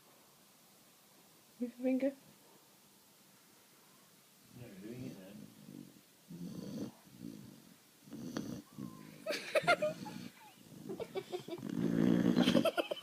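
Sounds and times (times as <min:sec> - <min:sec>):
pet snoring: 0:04.9 - 0:09.1, 0:09.9 - 0:12.7.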